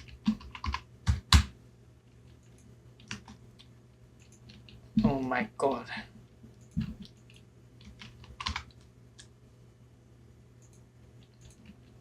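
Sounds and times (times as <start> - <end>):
computer keyboard keystrokes: 0.0 - 1.5, 2.4 - 3.4, 6.6 - 9.3, 10.6 - 11.8
faint steady hum: 0.0 - 12.0.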